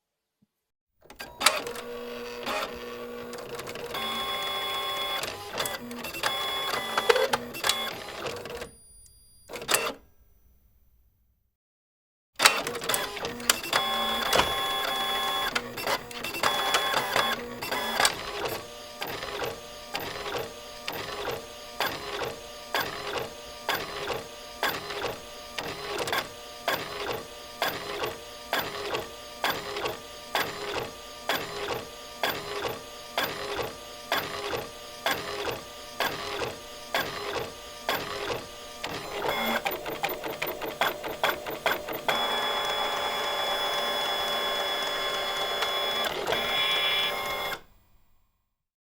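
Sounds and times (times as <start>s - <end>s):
printer motor whirring: 1.1s - 8.8s, 12.4s - 47.8s
printer strokes: 1.2s - 8.8s, 12.4s - 47.7s
rapid printer ticks: 1.4s - 8.6s, 12.4s - 47.6s
printer clicks: 12.4s - 19.2s, 33.3s - 47.7s.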